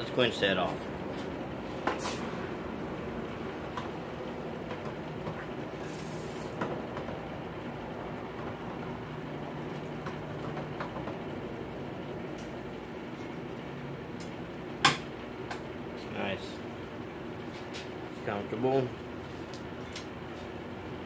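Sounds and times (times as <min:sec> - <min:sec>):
background rumble and hum: 0:00.0 - 0:18.2.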